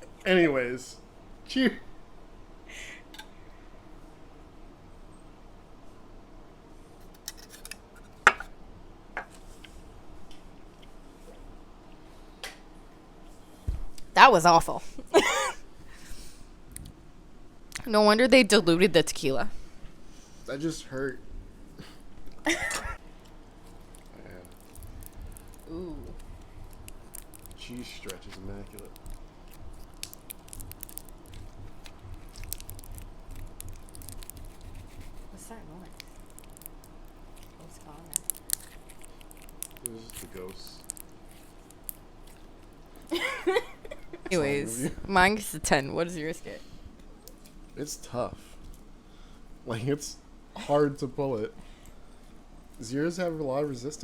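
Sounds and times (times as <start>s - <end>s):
slime squished by hand: 24.0s - 42.0s.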